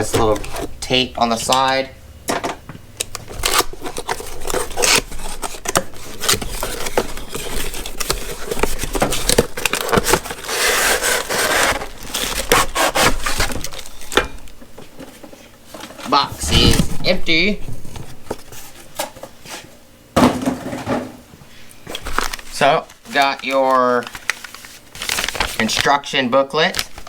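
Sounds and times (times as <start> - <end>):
cardboard scraping and rustling: 0.0 - 0.8, 3.3 - 14.1, 15.1 - 19.7.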